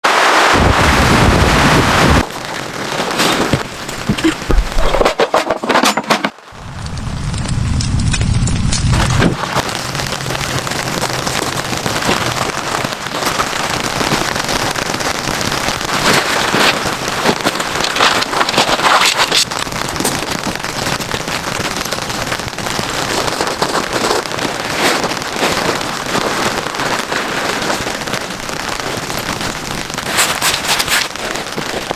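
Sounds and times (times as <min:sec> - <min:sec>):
heavy rain pattering: 0:00.0 - 0:31.9
wind buffeting microphone: 0:00.5 - 0:05.0, 0:06.6 - 0:21.1.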